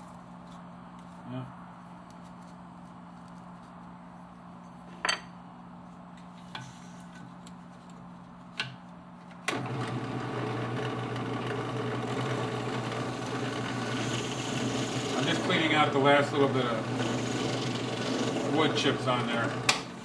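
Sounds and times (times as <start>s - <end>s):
bench power tool running: 9.5s - 20.0s.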